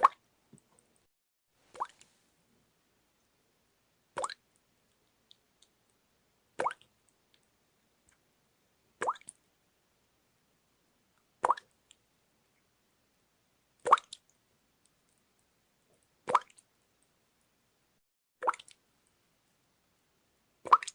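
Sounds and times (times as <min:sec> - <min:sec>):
water drops plopping: 0:04.2 - 0:04.4, 0:11.4 - 0:11.6, 0:18.4 - 0:18.8.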